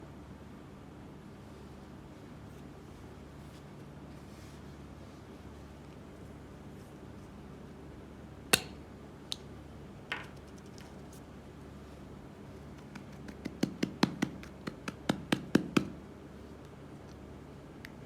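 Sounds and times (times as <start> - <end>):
chalk cracking: 11.9 - 15.4.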